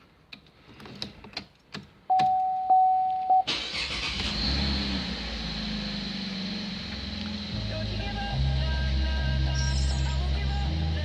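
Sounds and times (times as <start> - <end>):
car engine starting and idling: 3.5 - 11.0.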